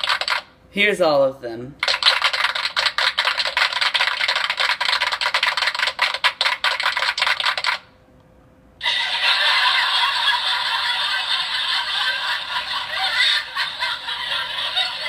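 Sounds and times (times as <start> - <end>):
rapid clattering effect: 0.0 - 0.5, 1.8 - 7.8.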